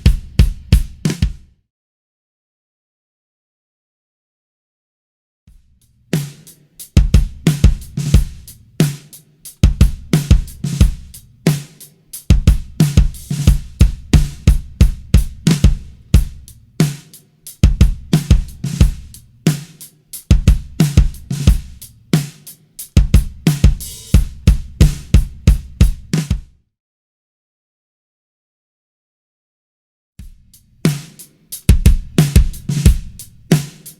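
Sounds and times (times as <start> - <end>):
bass drum kicks: 0.0 - 1.5, 12.3 - 16.4, 17.6 - 19.2, 20.3 - 21.8, 23.0 - 26.5, 31.7 - 33.2
drum kit groove: 0.0 - 1.6, 5.5 - 26.5, 30.2 - 33.9.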